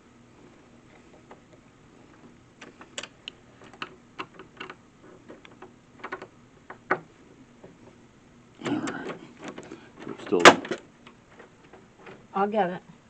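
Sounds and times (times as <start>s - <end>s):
metal door hardware clicking: 8.6s - 10.9s.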